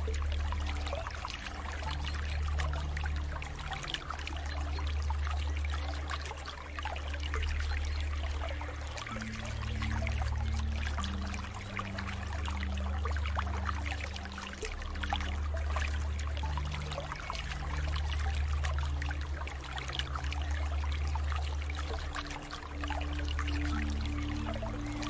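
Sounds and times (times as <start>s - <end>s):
low sustained music notes: 0.0s - 25.0s
water flowing and trickling: 0.0s - 25.0s.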